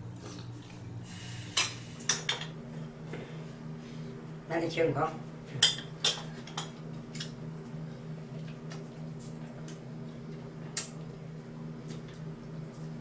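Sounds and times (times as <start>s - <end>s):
steady low hum: 0.0s - 5.7s
utensils clinking against dishes: 5.6s - 7.4s.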